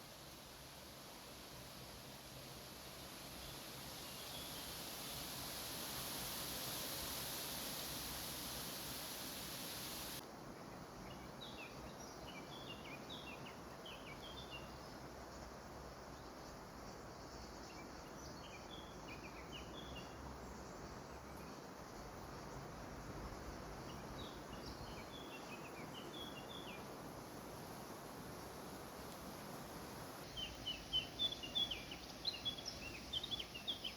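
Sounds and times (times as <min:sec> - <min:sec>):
songbird chirping: 0:23.4 - 0:27.0, 0:30.2 - 0:33.9.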